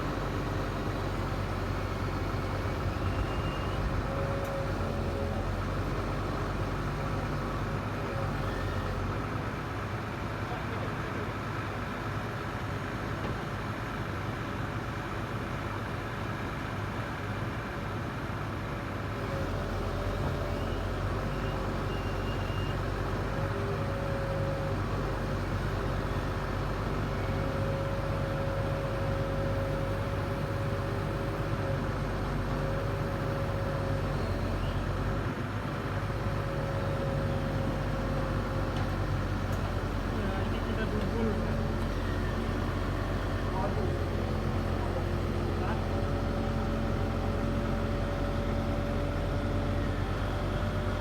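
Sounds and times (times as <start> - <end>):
large engine running: 19.2 - 51.0.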